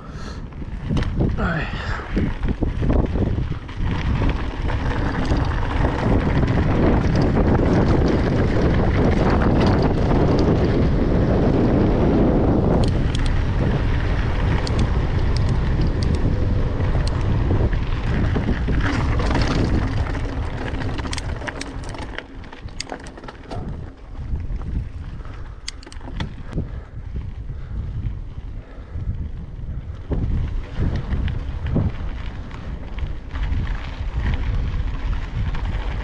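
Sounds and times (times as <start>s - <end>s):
wind buffeting microphone: 0.0s - 36.0s
sharp clicks: 12.7s - 13.4s.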